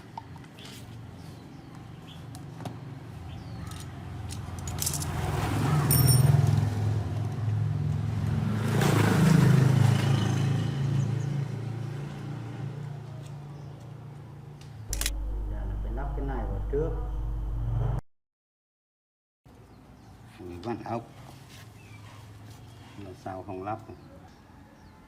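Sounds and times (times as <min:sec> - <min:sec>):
vehicle engine passing by: 0:05.0 - 0:13.1, 0:14.9 - 0:18.0
light metallic clinks: 0:05.9 - 0:06.4.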